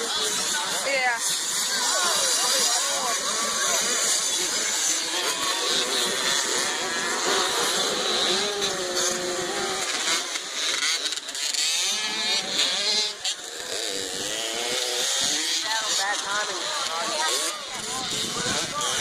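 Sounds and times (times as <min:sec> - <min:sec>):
dirt bike engines revving: 0:00.0 - 0:19.0.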